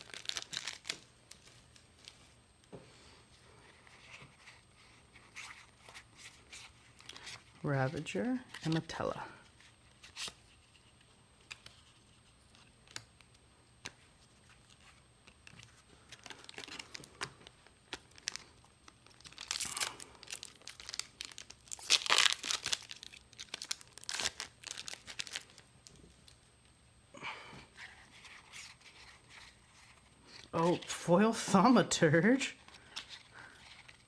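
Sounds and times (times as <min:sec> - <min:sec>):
foil wrapper tearing and crinkling: 0:00.0 - 0:01.4, 0:15.4 - 0:26.0.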